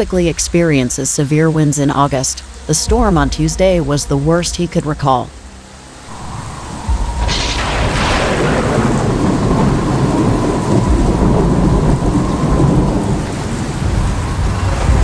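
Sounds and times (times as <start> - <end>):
steady rain: 0.0 - 15.0
thunderclap rumbling: 0.0 - 15.0.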